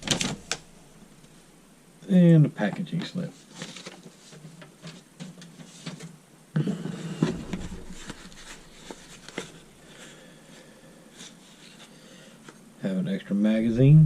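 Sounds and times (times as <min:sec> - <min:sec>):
paper packaging crinkling: 0:03.4 - 0:06.1.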